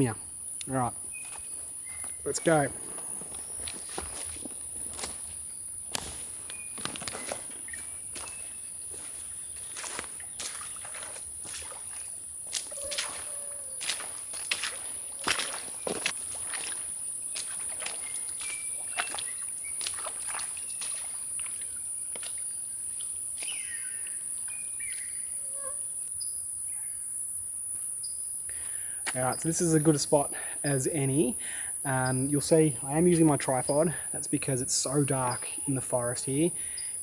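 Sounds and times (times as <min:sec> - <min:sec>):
footsteps through undergrowth: 0:01.0 - 0:25.1.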